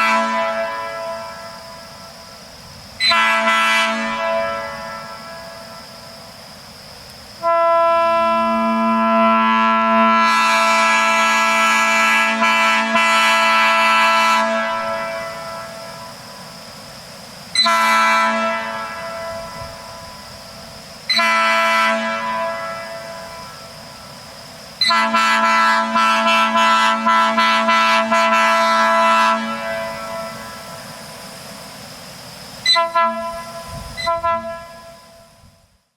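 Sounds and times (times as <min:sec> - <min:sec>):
train horn blasts: 0:00.0 - 0:02.3, 0:03.0 - 0:05.9, 0:07.4 - 0:16.2, 0:17.6 - 0:20.3, 0:21.1 - 0:23.8, 0:24.8 - 0:30.9, 0:32.6 - 0:35.6.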